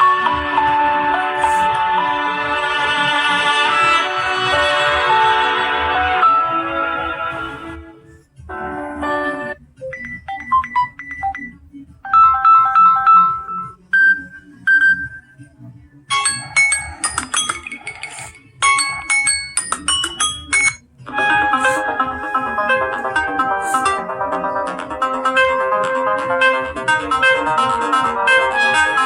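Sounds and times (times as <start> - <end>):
electronic ringtone melodies: 0.0 - 7.6, 8.5 - 15.3, 16.1 - 29.0
high bell-like notes: 16.1 - 24.1.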